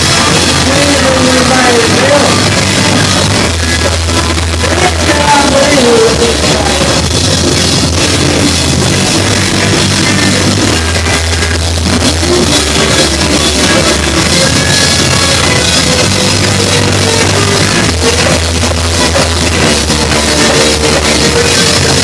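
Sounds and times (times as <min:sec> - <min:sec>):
drum kit beat: 0:00.0 - 0:22.0
rock band playing live: 0:00.0 - 0:22.0.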